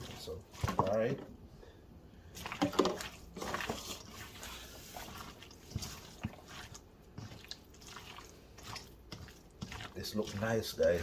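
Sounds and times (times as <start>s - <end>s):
hands rubbing wet raw fish: 2.3s - 11.0s.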